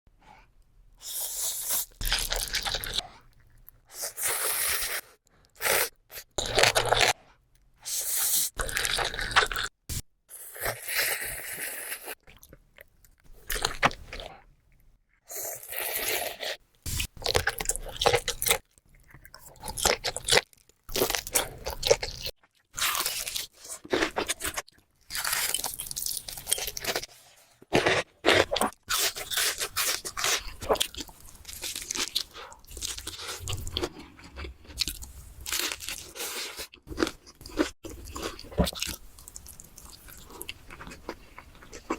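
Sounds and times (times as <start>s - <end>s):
crunchy food being chewed: 1.1s - 7.4s, 8.4s - 9.8s, 10.4s - 41.9s.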